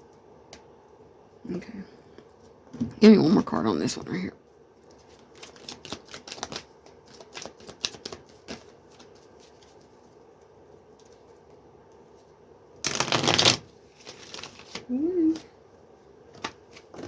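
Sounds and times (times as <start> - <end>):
cards being shuffled: 4.8 - 11.4, 12.8 - 15.5, 16.3 - 17.0.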